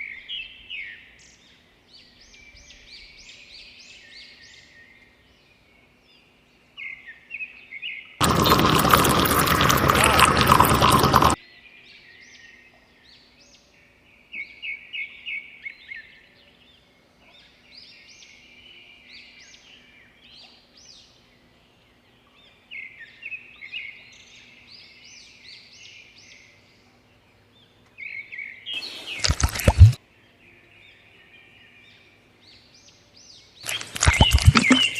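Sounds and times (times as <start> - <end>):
small birds chirping: 27.4 - 30.0, 32.6 - 34.9.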